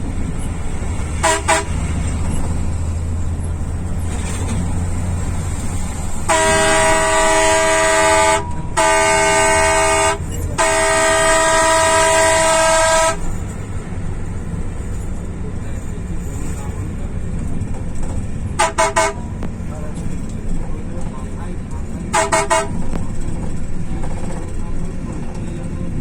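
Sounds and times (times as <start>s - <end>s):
low engine rumble: 0.0s - 26.0s
vehicle horn blasts: 1.2s - 1.9s, 6.2s - 13.3s, 18.6s - 19.4s, 22.1s - 23.0s.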